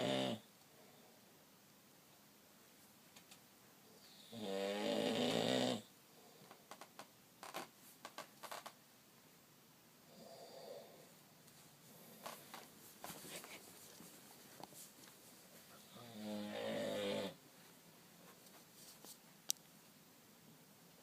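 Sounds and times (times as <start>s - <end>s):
man snoring: 0.0s - 0.4s, 4.1s - 5.9s, 10.1s - 11.0s, 15.8s - 17.4s.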